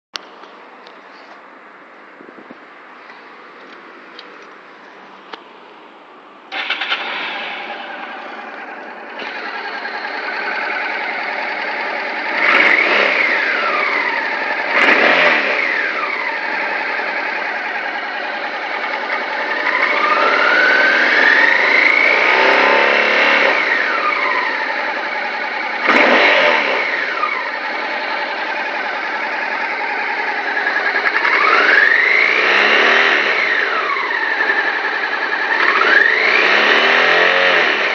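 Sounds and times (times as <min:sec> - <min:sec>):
motorcycle engine starting and revving: 0:06.5 - 0:37.9.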